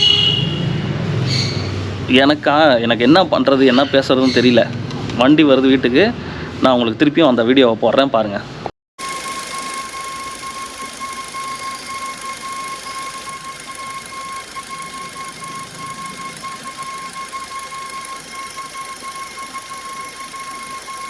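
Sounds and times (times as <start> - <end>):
high-pitched whine: 9.0 - 21.0.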